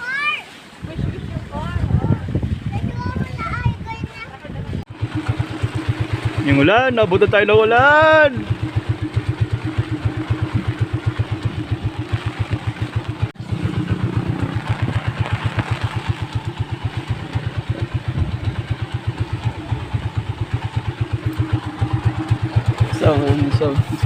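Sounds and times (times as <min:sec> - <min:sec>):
small motorcycle engine running: 0:04.9 - 0:24.0
heavy rain hissing: 0:10.1 - 0:23.0.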